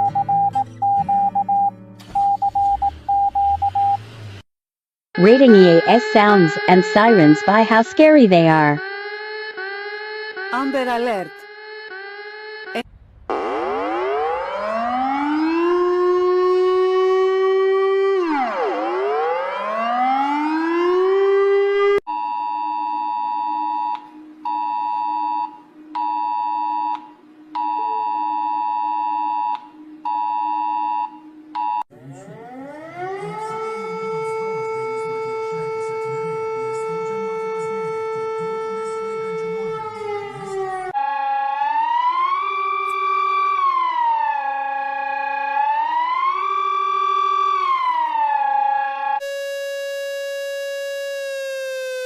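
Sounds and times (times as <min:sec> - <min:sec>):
synthesized siren tone: 0:02.0 - 0:04.4, 0:05.2 - 0:52.0
siren glide: 0:02.1 - 0:04.4, 0:05.2 - 0:52.0
harsh two-tone alert beep: 0:05.2 - 0:08.8.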